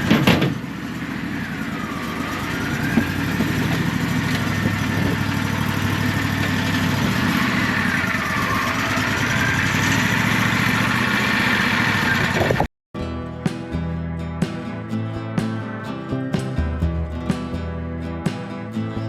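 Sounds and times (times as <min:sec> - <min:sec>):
sawmill engine running with whine: 0:00.0 - 0:12.7
acoustic guitar music: 0:13.0 - 0:19.0.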